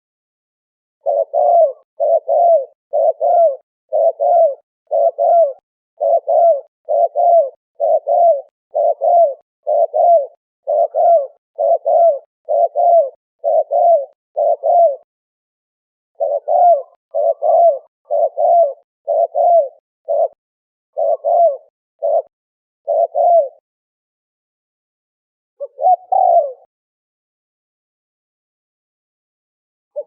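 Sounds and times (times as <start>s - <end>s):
dove cooing: 1.0s - 15.1s, 16.2s - 23.6s, 25.6s - 26.7s.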